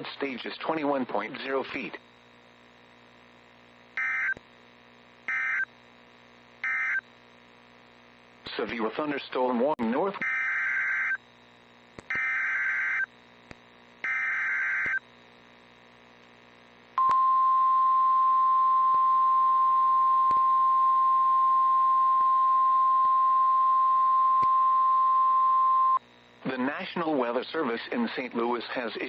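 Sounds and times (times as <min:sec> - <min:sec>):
steady warning alarm tone: 0:04.0 - 0:04.4, 0:05.3 - 0:05.7, 0:06.6 - 0:07.0, 0:10.2 - 0:11.2, 0:12.2 - 0:13.1, 0:14.0 - 0:15.0.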